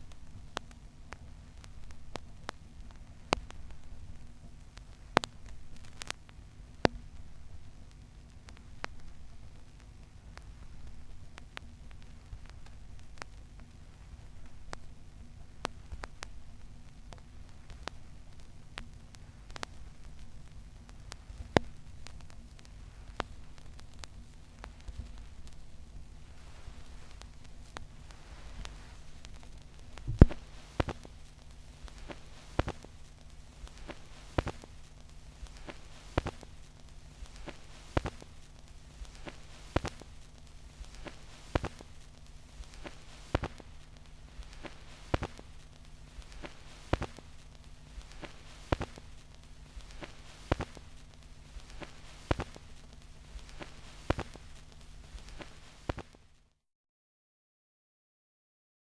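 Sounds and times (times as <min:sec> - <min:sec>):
low hum: 0:00.0 - 0:56.2
vinyl surface crackle: 0:00.0 - 0:56.5
record click: 0:15.6 - 0:56.2.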